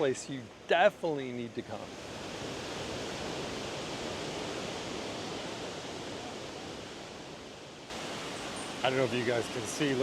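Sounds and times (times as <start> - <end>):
waterfall roaring: 7.9 - 10.0.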